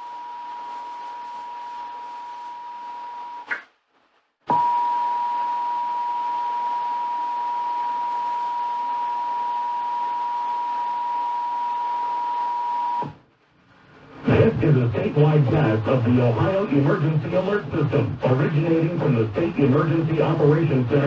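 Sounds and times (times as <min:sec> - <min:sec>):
short high blip: 0:03.5 - 0:03.7.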